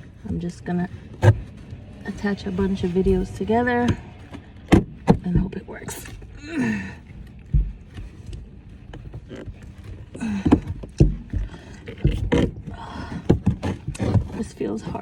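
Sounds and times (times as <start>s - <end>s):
plastic clicks knocks and scraping: 7.1s - 15.0s.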